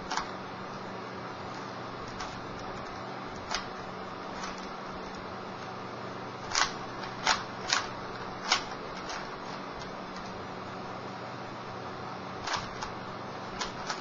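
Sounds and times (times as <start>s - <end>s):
puzzle cube plastic layers clicking: 2.1s - 5.2s, 6.5s - 10.4s, 12.4s - 14.0s.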